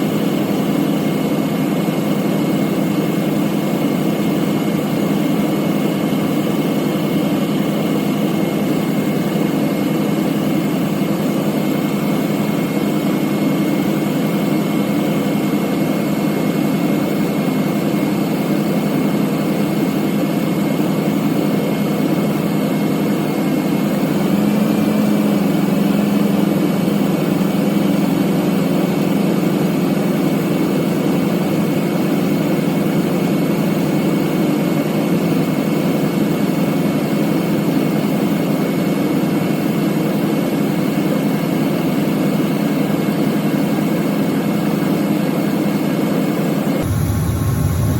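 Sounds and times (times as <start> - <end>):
engine idling: 0.0 - 47.9
high whine: 46.8 - 47.9.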